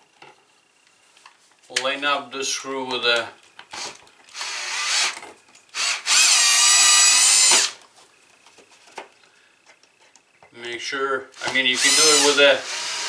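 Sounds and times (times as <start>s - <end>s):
drill-driver whining: 3.7s - 7.8s, 11.4s - 13.0s.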